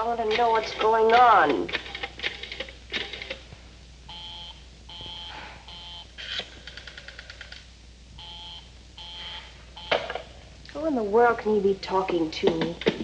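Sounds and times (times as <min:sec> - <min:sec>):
telephone busy signal beeps: 0:04.1 - 0:06.1, 0:08.2 - 0:10.1.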